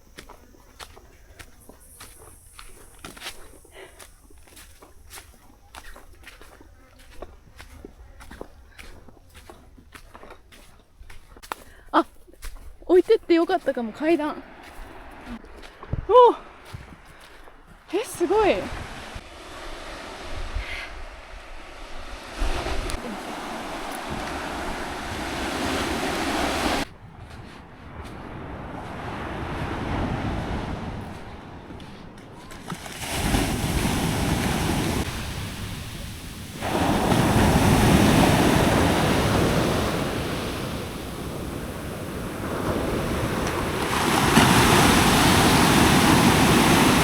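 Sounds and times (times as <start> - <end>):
ocean waves washing: 18.0 - 27.0, 27.6 - 47.0
wind on microphone: 18.2 - 47.0.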